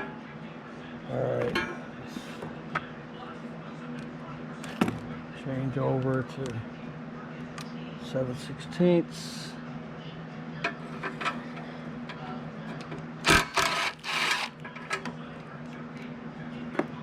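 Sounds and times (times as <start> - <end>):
socket wrench ratcheting: 13.3 - 14.5.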